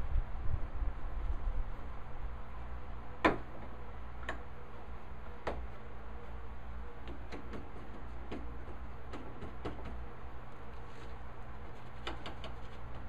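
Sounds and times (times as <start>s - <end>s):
low hum: 0.0s - 9.2s
hand tools clicking on wood: 12.0s - 13.0s.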